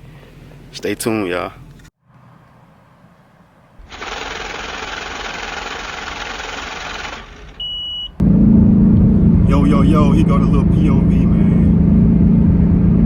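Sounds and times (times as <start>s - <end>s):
fuel pump whirring: 3.8s - 8.3s
loud car engine running: 3.9s - 7.6s, 8.2s - 13.0s
short high beep: 7.6s - 8.2s.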